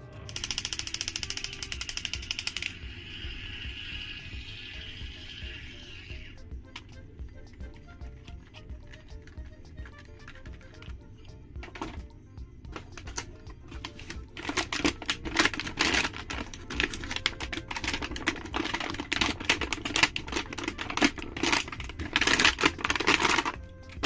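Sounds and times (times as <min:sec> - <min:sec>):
packaging clicks and crackles: 0:00.2 - 0:02.8, 0:08.4 - 0:24.0.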